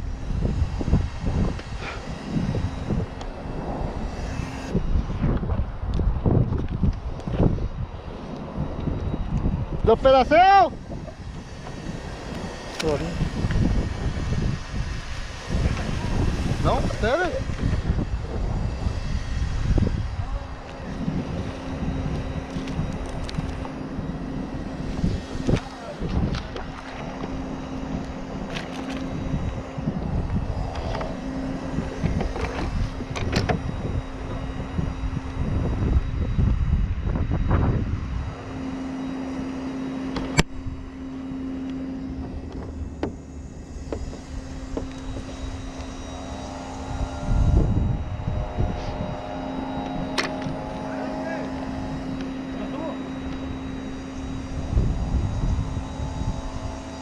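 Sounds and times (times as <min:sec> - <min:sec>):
engine humming: 0:00.0 - 0:57.0
wind rumble on microphone: 0:00.0 - 0:57.0.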